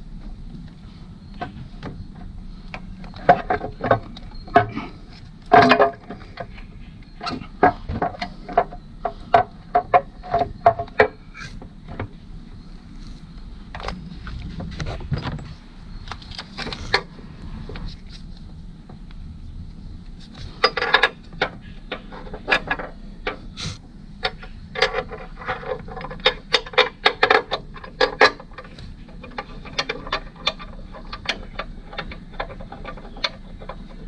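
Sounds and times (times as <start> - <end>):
faint steady hum: 0.0 - 34.0
metal tools clinking and knocking: 3.0 - 11.5, 20.3 - 23.5.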